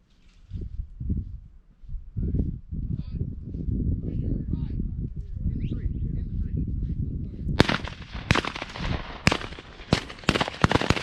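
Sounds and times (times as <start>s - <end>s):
shotgun shots: 7.6s - 11.0s.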